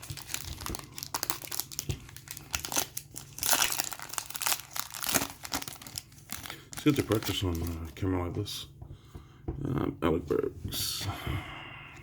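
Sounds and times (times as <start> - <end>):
foil wrapper crinkling: 0.0 - 8.1.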